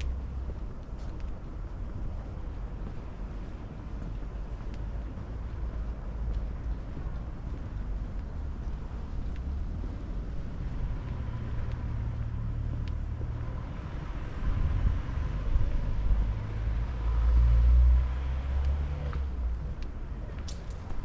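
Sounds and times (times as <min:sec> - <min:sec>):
car passing: 0:08.4 - 0:19.7.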